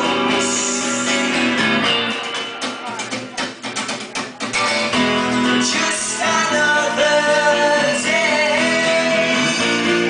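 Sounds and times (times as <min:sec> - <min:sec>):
live rock band playing: 0:00.0 - 0:10.0
sharp strummed guitar chords: 0:00.0 - 0:10.0.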